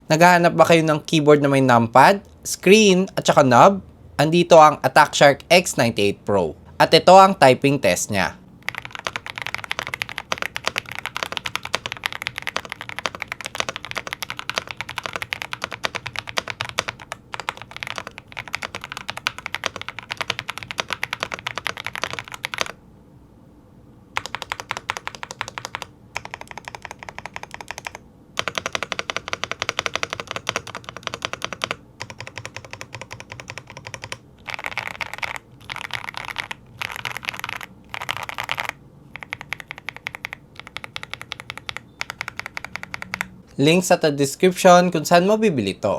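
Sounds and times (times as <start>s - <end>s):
mechanical keyboard typing: 8.6s - 22.8s, 24.2s - 43.4s.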